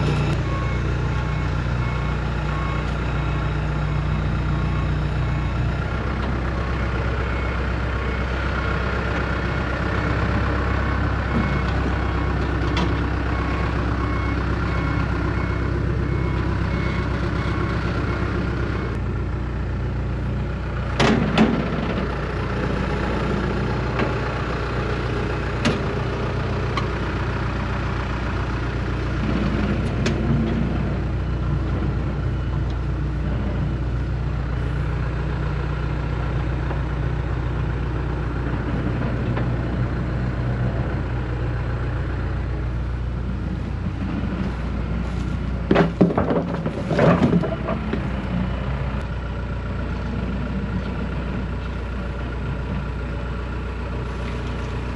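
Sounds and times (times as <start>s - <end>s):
backup alarm beeping: 0.0s - 5.9s, 10.7s - 12.5s
loader engine running: 0.0s - 54.9s.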